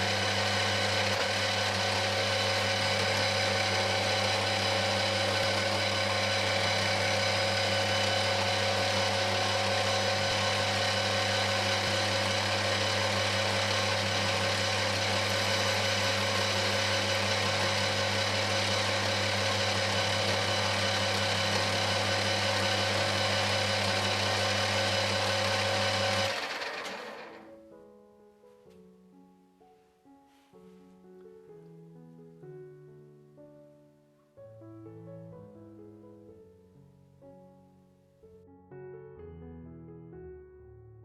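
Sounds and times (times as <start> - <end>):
machine tool motor humming: 0.0 - 27.4.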